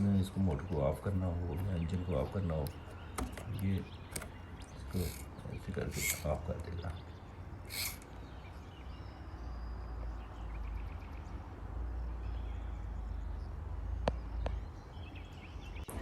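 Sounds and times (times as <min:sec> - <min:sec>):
faint birdsong: 0:00.0 - 0:16.0
sharp clicks: 0:02.6 - 0:07.0, 0:07.7 - 0:08.1.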